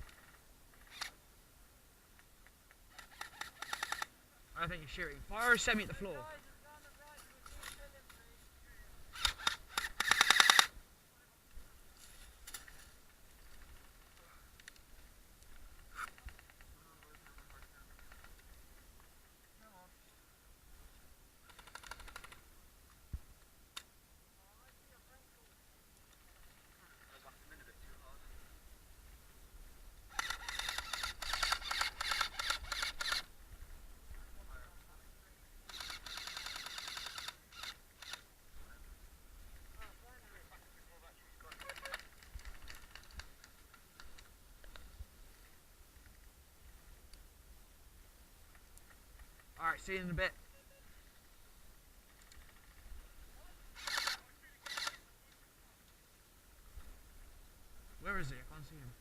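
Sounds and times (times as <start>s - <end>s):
airsoft gun full-auto burst: 3.0s - 4.1s, 9.1s - 10.8s, 30.1s - 33.2s, 35.7s - 38.2s, 53.8s - 55.0s
airsoft gun shots: 9.2s - 10.7s.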